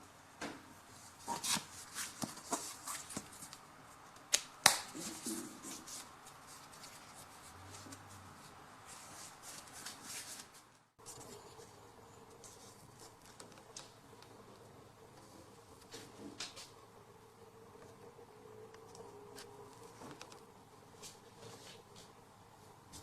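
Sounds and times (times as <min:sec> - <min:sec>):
soft rustling: 0:05.0 - 0:14.0.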